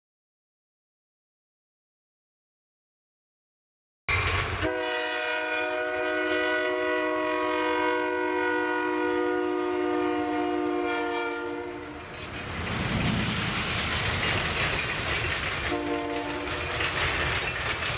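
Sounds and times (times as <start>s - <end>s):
train rumbling: 4.1s - 17.9s
locomotive air horn blast: 4.6s - 12.0s, 15.7s - 16.6s.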